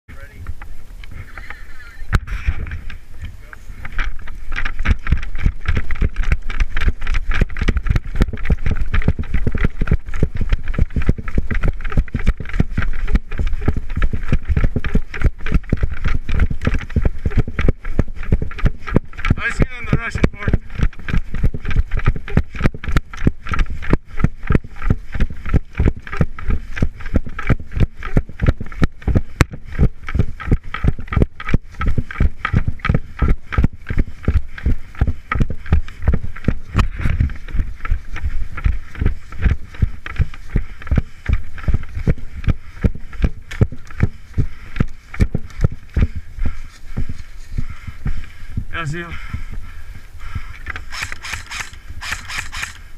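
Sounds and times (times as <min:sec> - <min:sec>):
rustle of movement: 0:00.1 - 0:52.9
heavy footsteps: 0:02.1 - 0:52.6.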